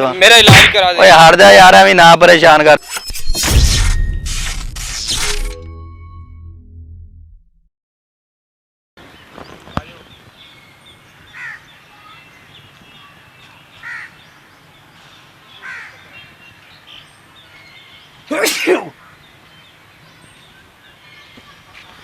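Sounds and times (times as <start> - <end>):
crows cawing faintly: 11.2 - 12.2, 13.8 - 14.2, 15.6 - 16.1
person sneezing: 18.3 - 18.9.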